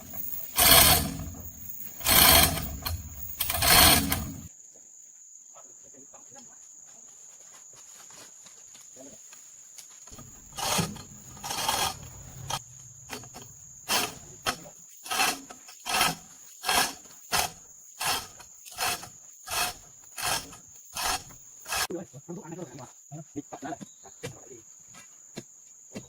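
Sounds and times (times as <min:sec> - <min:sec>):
hand tool scraping strokes: 0:00.0 - 0:04.5, 0:10.1 - 0:21.9.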